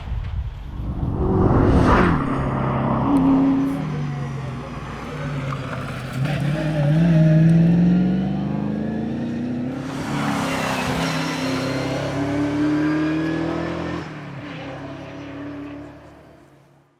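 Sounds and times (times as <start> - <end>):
loud rushing noise: 0.3 - 5.0
rally car engine accelerating: 1.0 - 16.3.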